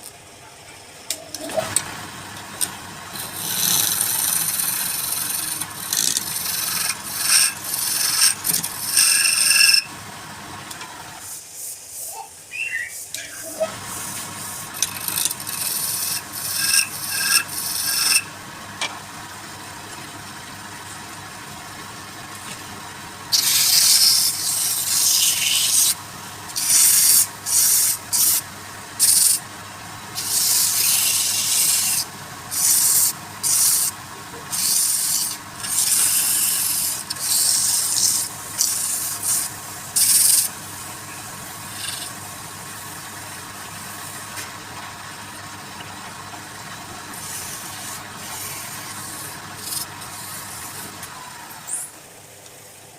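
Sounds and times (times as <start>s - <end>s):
wood lathe humming: 1.3s - 11.2s, 13.6s - 51.6s
tool rasping on spinning wood: 2.6s - 9.9s, 13.2s - 18.3s, 23.3s - 29.5s, 30.1s - 44.2s, 47.0s - 51.1s.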